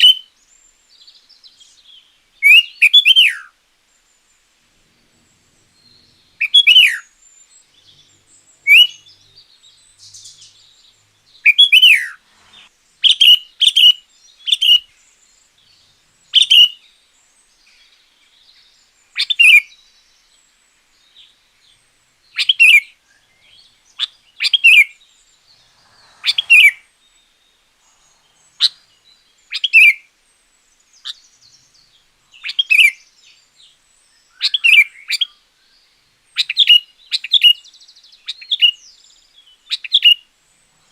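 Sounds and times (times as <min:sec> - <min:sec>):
bulbul whistling downward phrases: 0:05.6 - 0:07.1, 0:07.8 - 0:13.9, 0:25.4 - 0:30.0.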